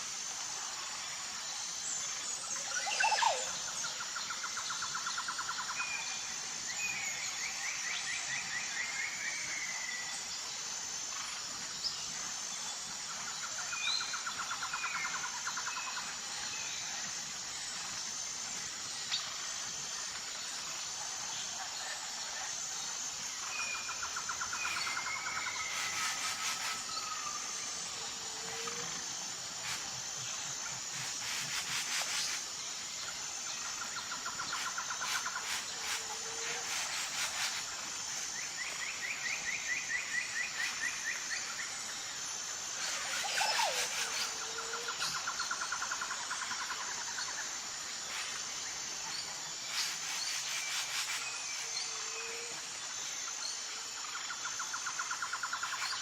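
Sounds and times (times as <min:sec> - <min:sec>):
insect drone: 0:00.0 - 0:56.0
rapid trilling bird calls: 0:23.8 - 0:27.8, 0:42.8 - 0:45.3.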